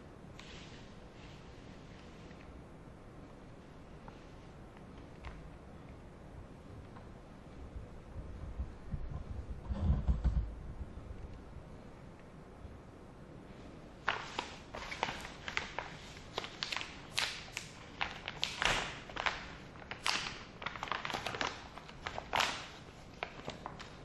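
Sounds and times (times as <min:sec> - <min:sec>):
plastic pouch crinkling: 0:14.0 - 0:24.0.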